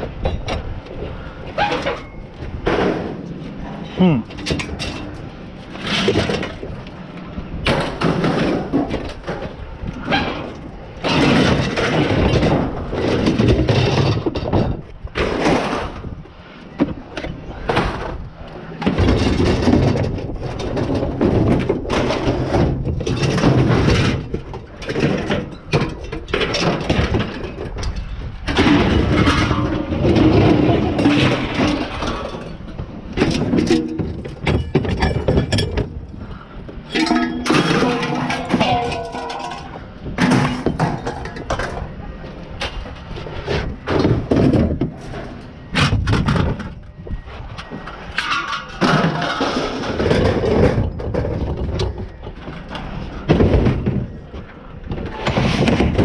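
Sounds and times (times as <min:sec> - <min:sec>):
scrap metal clanking onto a pile: 0:18.8 - 0:42.0, 0:47.9 - 0:54.1.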